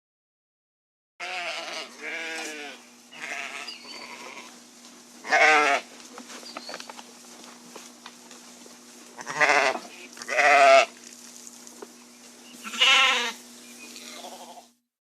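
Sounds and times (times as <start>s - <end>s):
sheep bleating: 1.2s - 4.6s, 5.2s - 5.9s, 9.2s - 10.9s, 12.6s - 13.4s, 14.0s - 14.8s.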